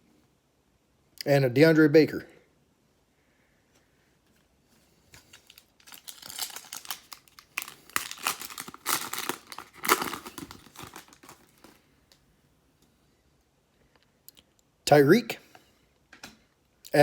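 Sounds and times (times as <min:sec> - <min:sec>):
plastic wrapper crinkling and tearing: 0:05.1 - 0:12.2.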